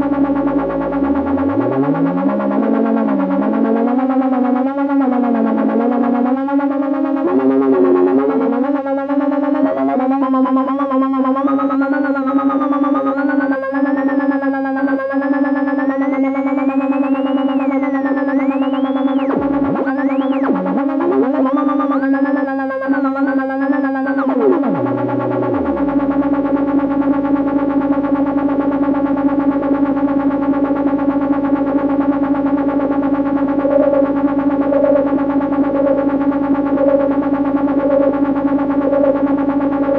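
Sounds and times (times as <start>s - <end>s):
buzzy synth drone: 0.0s - 39.9s
gliding warbling synth tones: 5.2s - 12.8s, 16.8s - 26.3s, 33.2s - 39.9s.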